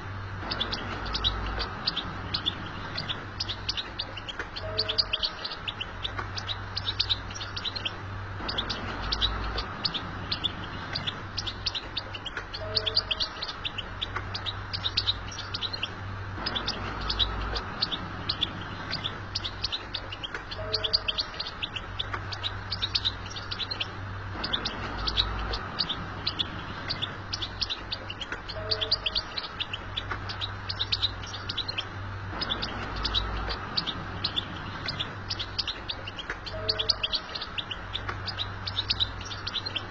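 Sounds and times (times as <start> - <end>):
faint low hum: 0.0 - 39.9
goldfinch twittering: 0.4 - 39.9.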